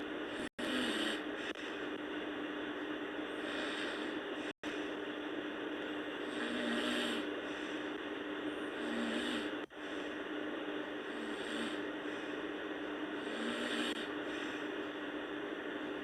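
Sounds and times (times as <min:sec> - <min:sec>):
steady hiss and low hum: 0:00.0 - 0:16.0
girl snoring: 0:00.3 - 0:01.3, 0:03.3 - 0:04.6, 0:06.2 - 0:07.6, 0:08.6 - 0:09.8, 0:11.0 - 0:12.4, 0:13.2 - 0:14.7.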